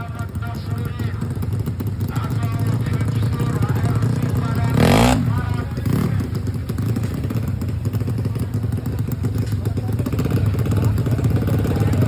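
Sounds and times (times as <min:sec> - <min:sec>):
scooter engine idling: 0:00.0 - 0:12.0.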